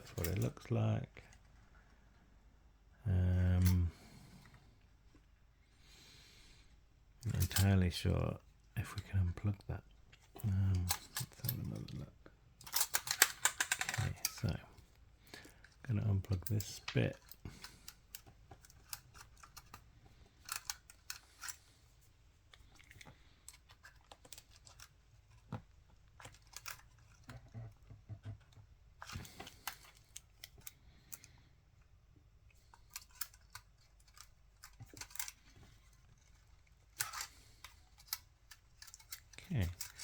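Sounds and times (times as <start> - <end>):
tool clicking on camera internals: 12.6 - 14.5.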